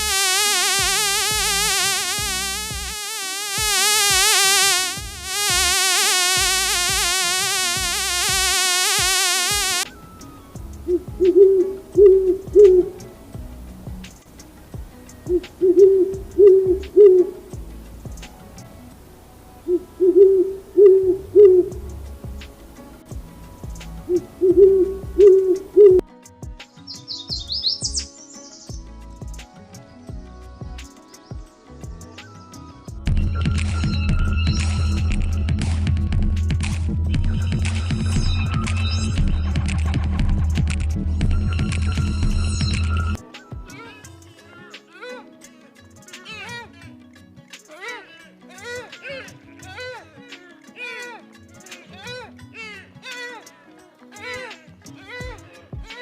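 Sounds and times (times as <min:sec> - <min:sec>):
buzzing whine: 0:00.0 - 0:09.9
owl hooting: 0:15.3 - 0:17.3, 0:19.7 - 0:21.7, 0:24.4 - 0:26.0
soft low thumps: 0:24.6 - 0:26.0.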